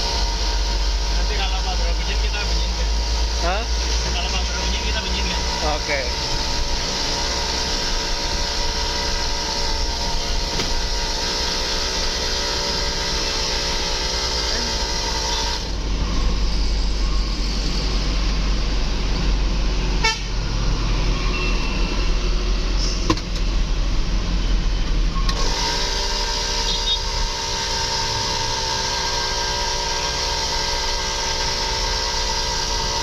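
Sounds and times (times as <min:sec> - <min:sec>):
vehicle engine and road rumble: 0:00.0 - 0:33.0
multi-trumpet air horn chord: 0:20.0 - 0:20.3.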